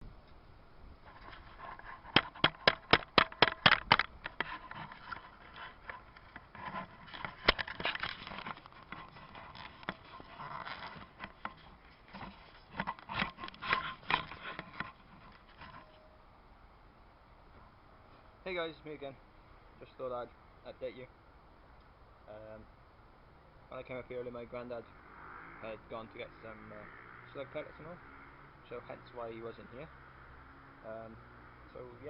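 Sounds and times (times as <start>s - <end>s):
scraping: 1.0s - 16.0s
sharp knocks: 2.1s - 4.6s.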